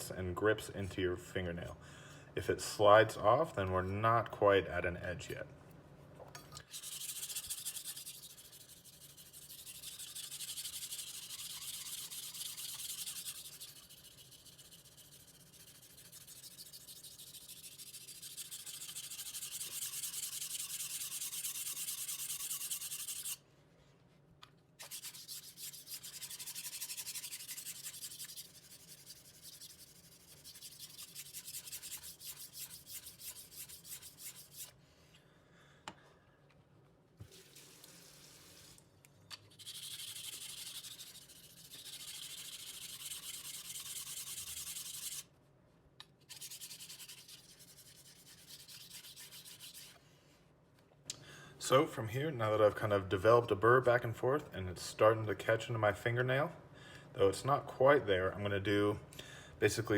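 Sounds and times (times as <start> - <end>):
knife scraping on a whetstone: 6.6 - 23.4, 24.8 - 34.8, 39.4 - 45.3, 46.3 - 50.0.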